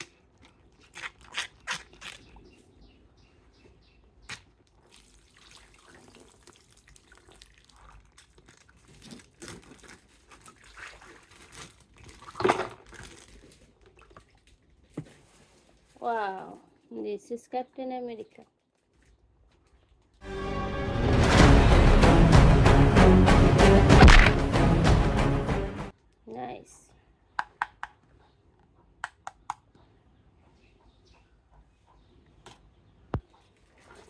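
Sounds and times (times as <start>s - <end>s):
water dripping and trickling: 4.6s - 14.8s.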